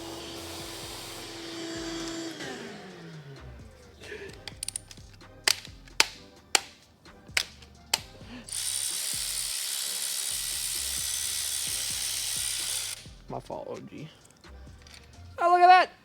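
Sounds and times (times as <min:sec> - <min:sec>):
loud steady hiss: 0:00.0 - 0:02.4, 0:07.9 - 0:13.4
metal tools clinking: 0:04.0 - 0:09.1, 0:13.9 - 0:15.4.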